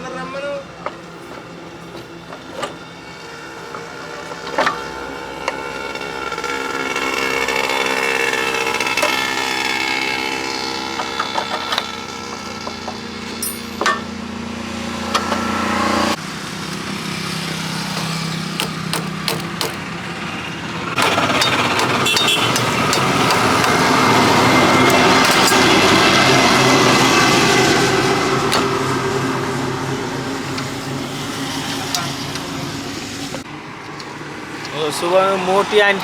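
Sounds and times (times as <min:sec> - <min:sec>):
motor engines running: 0:00.9 - 0:36.0
sharp knocks: 0:18.6 - 0:19.9.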